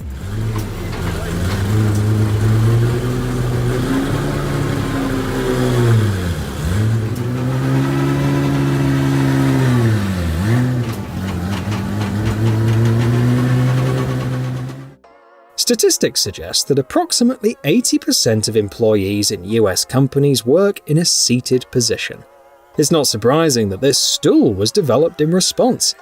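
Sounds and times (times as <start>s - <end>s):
engine running: 0.0s - 15.0s.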